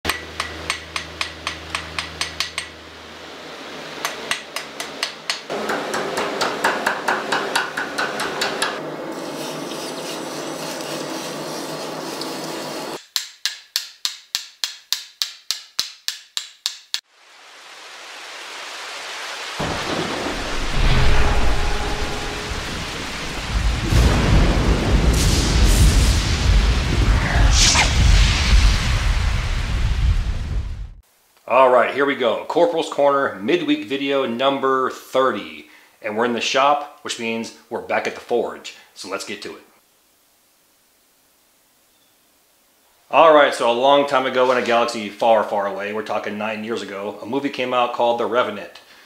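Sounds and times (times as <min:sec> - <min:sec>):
hammer striking steel on anvil: 0:00.1 - 0:02.8, 0:04.0 - 0:08.8, 0:20.9 - 0:23.0
steady hiss: 0:17.0 - 0:30.3, 0:31.0 - 0:49.0
loud low rumble: 0:19.6 - 0:31.0.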